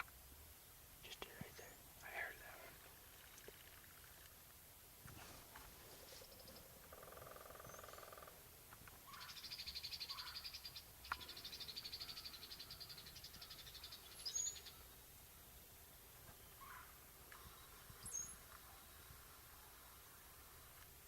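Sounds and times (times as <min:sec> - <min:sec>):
bird trills: 0:09.0 - 0:15.0, 0:16.6 - 0:18.4.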